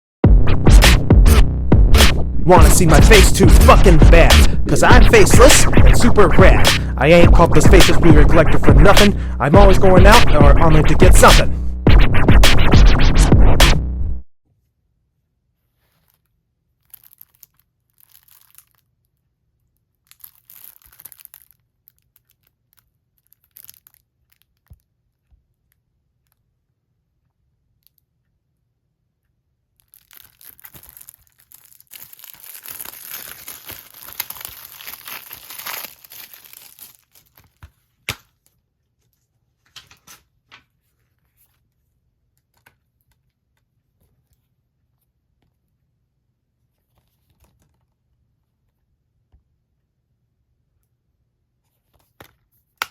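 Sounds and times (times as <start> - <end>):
plastic wrap tearing and crinkling: 15.7 - 26.4, 29.7 - 38.6.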